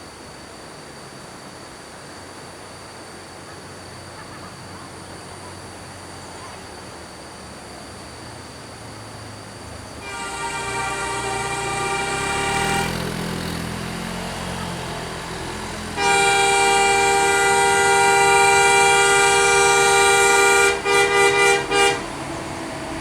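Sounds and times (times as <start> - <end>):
vehicle engine running low: 7.4 - 23.0
bus air horn chord: 10.0 - 23.0.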